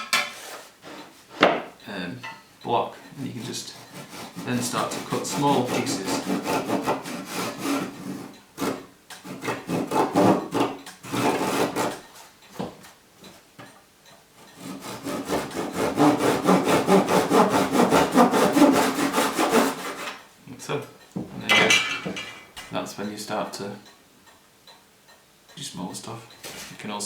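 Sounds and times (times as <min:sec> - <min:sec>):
pull saw cutting thin wood: 0:03.4 - 0:12.1, 0:14.6 - 0:20.2.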